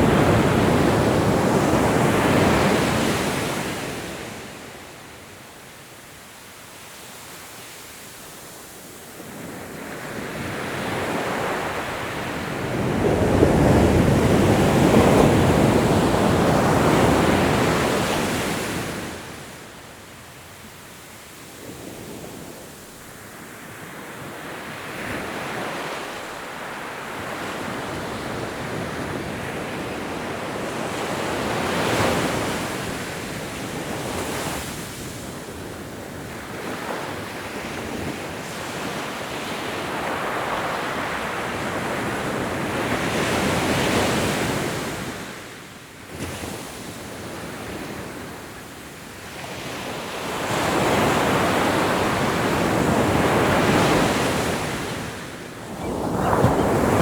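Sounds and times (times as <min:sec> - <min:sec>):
ocean waves breaking: 0:50.7 - 0:57.0.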